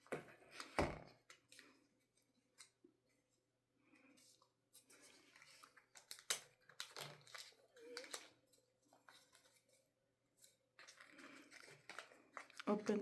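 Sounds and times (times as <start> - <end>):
packaging rustling: 10.4 - 13.0.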